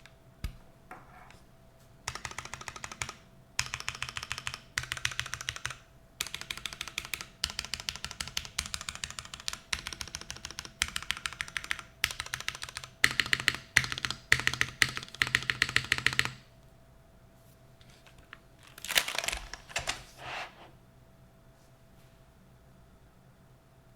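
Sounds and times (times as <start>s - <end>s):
mechanical keyboard typing: 2.1s - 16.4s, 18.8s - 20.0s.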